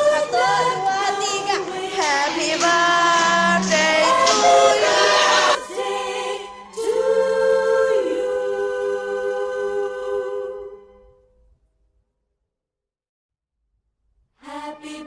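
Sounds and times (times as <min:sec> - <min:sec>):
choir singing in harmony: 0:00.0 - 0:11.2, 0:14.4 - 0:15.0.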